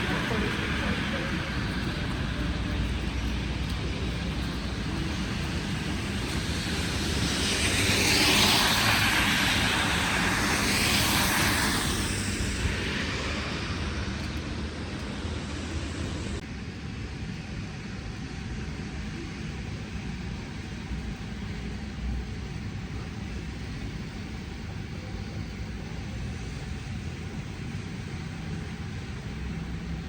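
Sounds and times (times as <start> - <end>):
vehicle tyres hissing past: 0.0 - 13.6
low city hum: 0.0 - 30.0.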